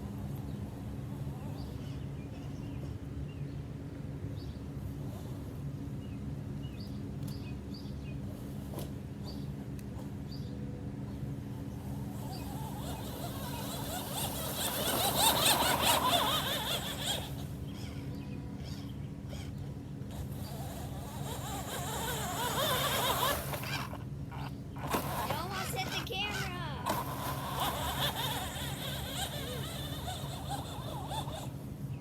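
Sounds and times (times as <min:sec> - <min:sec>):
rc truck motor whine: 0:11.4 - 0:32.0.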